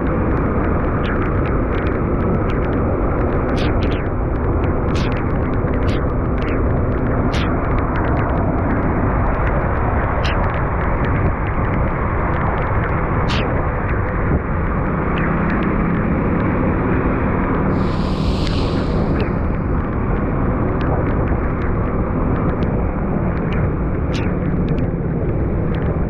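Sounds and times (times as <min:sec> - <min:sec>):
steady low rumble: 0:00.0 - 0:11.8, 0:17.7 - 0:25.5.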